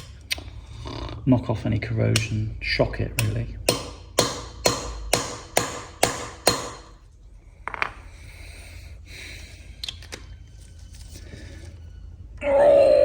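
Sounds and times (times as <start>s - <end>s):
hammer tapping metal: 2.1s - 2.4s, 3.1s - 7.0s.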